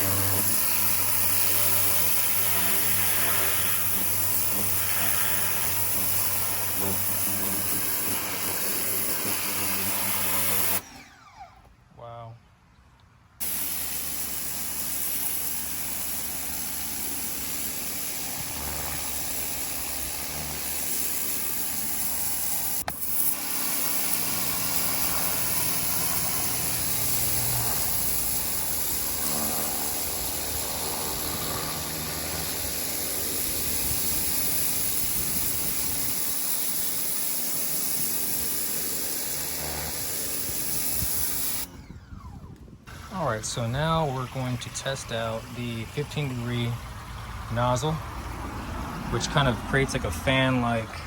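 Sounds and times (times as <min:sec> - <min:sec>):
pressure washer water jet hissing: 0:00.0 - 0:11.0, 0:13.4 - 0:41.8, 0:42.9 - 0:50.9
motor-pump hum: 0:15.6 - 0:37.3, 0:38.7 - 0:49.0.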